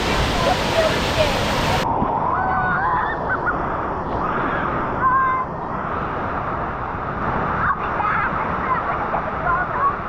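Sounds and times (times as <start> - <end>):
waterfall and creek rushing: 0.0 - 2.0.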